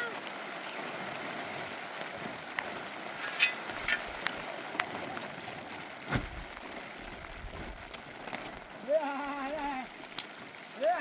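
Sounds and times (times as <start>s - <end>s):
heavy rain falling: 0.0s - 11.0s
dull thump: 6.1s - 6.4s.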